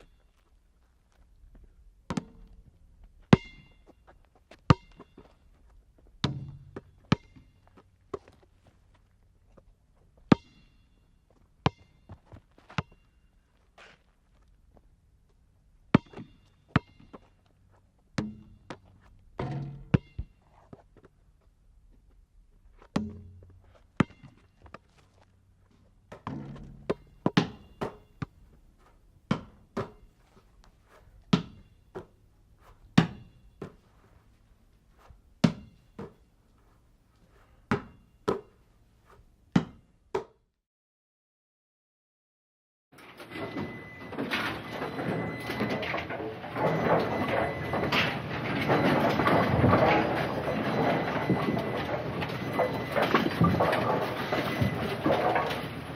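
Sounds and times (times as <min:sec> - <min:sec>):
objects thudding and knocking: 0:18.2 - 0:21.0, 0:25.9 - 0:40.4, 0:43.0 - 0:55.9
objects scraping: 0:43.0 - 0:55.9.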